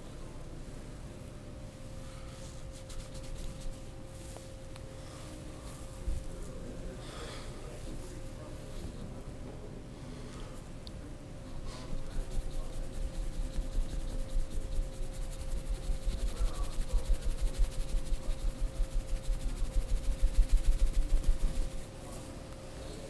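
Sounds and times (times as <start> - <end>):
faint steady hum: 0.0 - 23.0
massage percussion strokes: 12.0 - 21.9.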